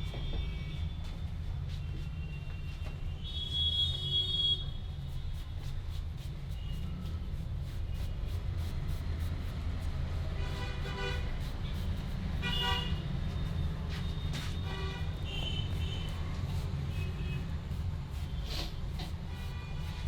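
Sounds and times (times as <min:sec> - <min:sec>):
vehicle horns honking: 0:03.2 - 0:04.8, 0:10.4 - 0:11.4, 0:12.4 - 0:13.1, 0:14.0 - 0:16.3.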